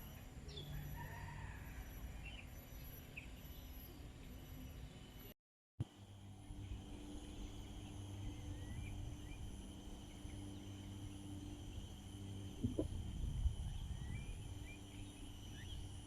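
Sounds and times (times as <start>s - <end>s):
insect drone: 0.0s - 16.0s
low hum: 2.0s - 16.0s
bird chirps: 13.6s - 16.0s.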